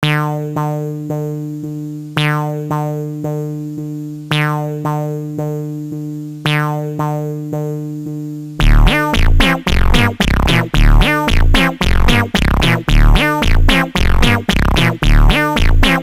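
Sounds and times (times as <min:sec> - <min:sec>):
held bass tone: 0:08.6 - 0:16.0
synthesizer plucked phrase: 0:08.6 - 0:16.0.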